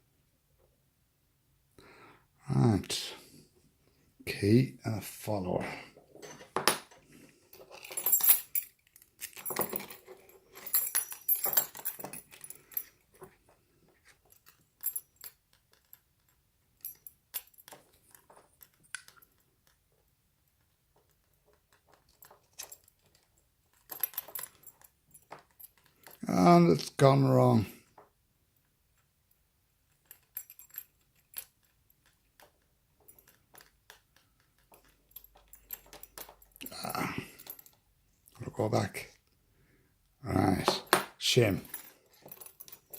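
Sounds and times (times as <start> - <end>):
keys jangling: 7.6 - 13.4, 14.0 - 19.8, 21.0 - 26.3, 29.9 - 37.8, 41.4 - 42.9
metal lock parts clicking: 7.6 - 13.4, 14.0 - 26.2, 29.8 - 36.7.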